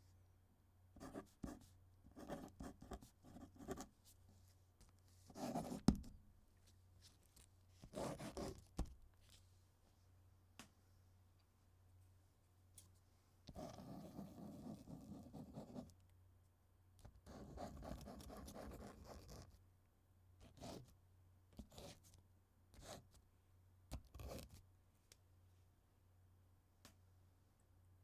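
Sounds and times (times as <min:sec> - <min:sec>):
pen writing on paper: 0:02.2 - 0:03.8, 0:05.4 - 0:05.8, 0:07.9 - 0:08.5, 0:13.6 - 0:15.8, 0:17.3 - 0:19.4.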